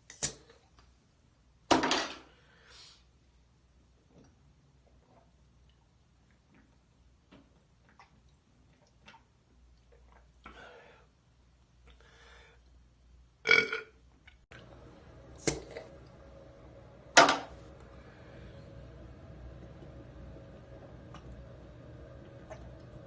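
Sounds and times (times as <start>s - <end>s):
man burping: 13.5s - 13.9s.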